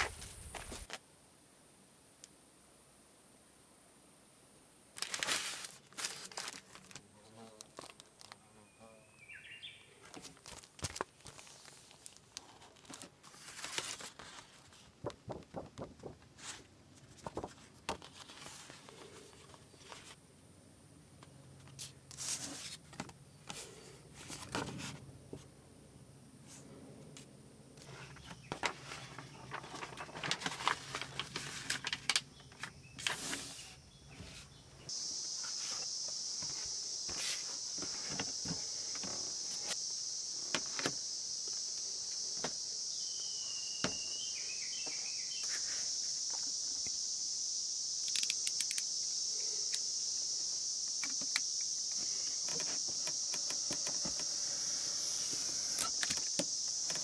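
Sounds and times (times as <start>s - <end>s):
night insects chorus: 7.1s - 12.2s, 18.2s - 57.0s.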